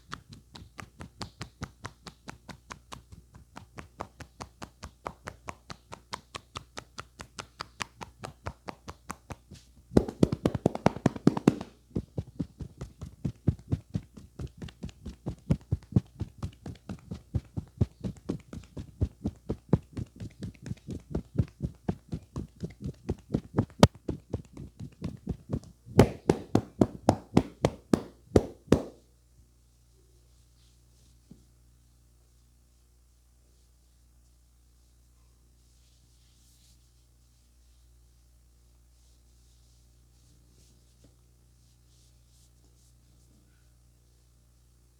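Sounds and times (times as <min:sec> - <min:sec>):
hand strikes of head massage: 0:00.1 - 0:29.0.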